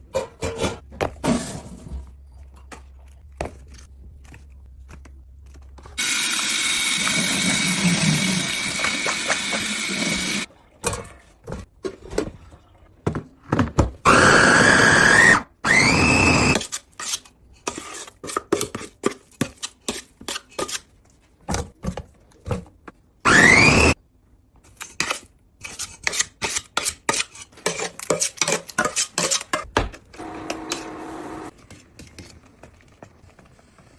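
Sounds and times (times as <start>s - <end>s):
kitchen machine running: 6.0s - 10.5s, 30.1s - 31.5s
kitchen knocks and taps: 29.6s - 30.2s.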